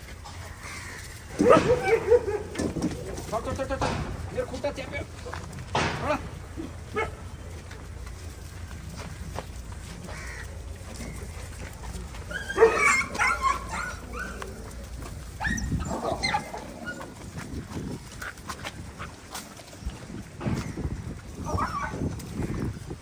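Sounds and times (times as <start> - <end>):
dogs barking: 0.2 - 8.4, 10.0 - 17.6, 20.4 - 22.7.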